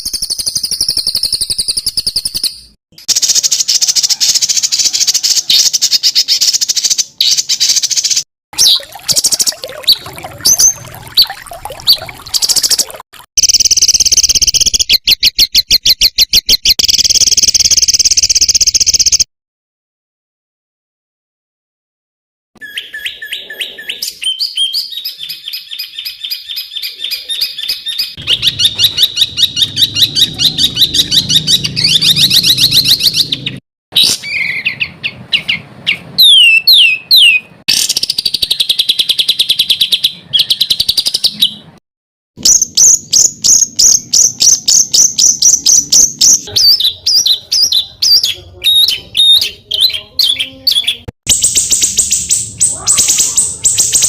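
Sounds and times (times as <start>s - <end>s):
songbird singing harsh rapid notes: 0.0s - 19.2s, 22.6s - 41.6s.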